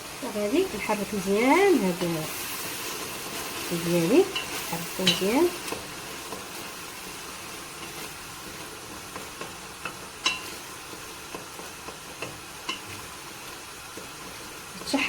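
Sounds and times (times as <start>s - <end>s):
food sizzling in oil: 0.0s - 15.0s
spoon knocking against pot: 4.4s - 5.3s, 9.2s - 10.5s.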